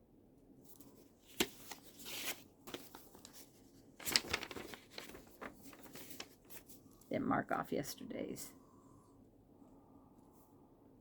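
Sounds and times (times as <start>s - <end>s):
paper rustling: 0.6s - 7.1s.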